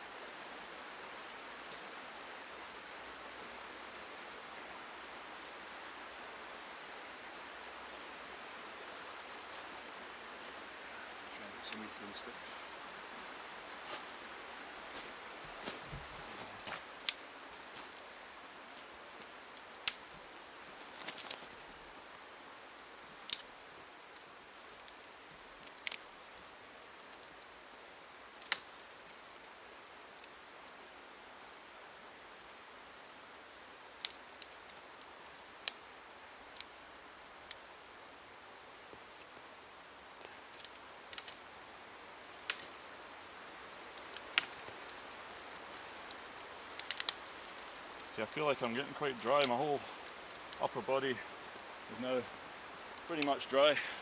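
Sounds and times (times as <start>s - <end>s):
faint steady hiss: 0.0s - 54.0s
dry sticks snapping: 16.6s - 18.0s, 19.5s - 20.2s, 20.8s - 21.6s, 23.2s - 26.1s, 28.3s - 28.8s, 34.0s - 35.0s, 40.2s - 41.4s, 42.4s - 42.8s, 44.0s - 48.1s, 49.1s - 50.6s.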